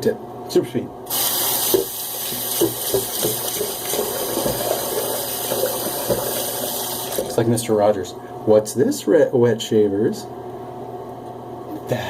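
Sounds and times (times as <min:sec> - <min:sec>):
tap water running into sink: 0:01.1 - 0:07.5.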